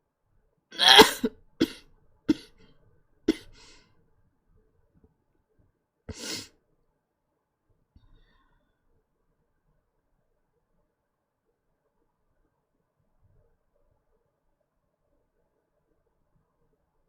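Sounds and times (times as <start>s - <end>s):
woman coughing: 0.8s - 2.5s.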